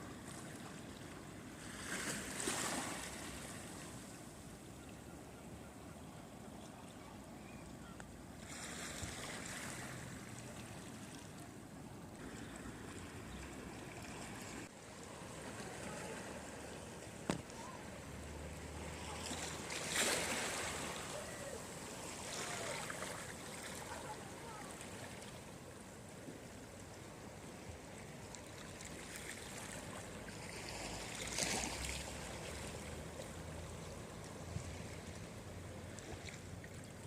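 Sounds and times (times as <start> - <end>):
waves washing over rocks: 1.6 - 4.0, 14.4 - 36.6.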